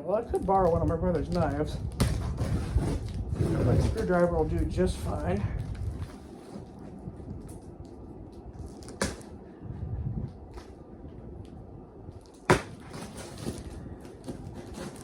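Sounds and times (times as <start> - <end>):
screwdriver scraping packing tape: 12.8 - 15.0.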